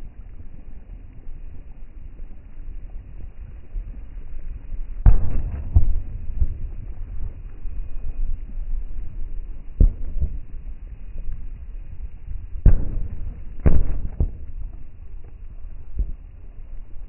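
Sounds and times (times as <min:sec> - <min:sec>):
low rumble: 0:00.0 - 0:17.0
fireworks crackling: 0:04.6 - 0:17.0
fireworks bangs: 0:05.0 - 0:07.7, 0:12.6 - 0:16.1.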